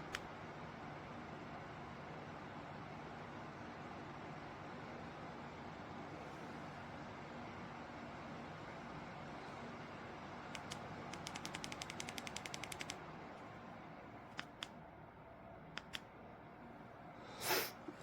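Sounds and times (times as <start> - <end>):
fan clicks: 0.0 - 0.3, 10.5 - 13.0, 14.3 - 14.8, 15.7 - 16.1
fan air hissing: 17.1 - 18.0.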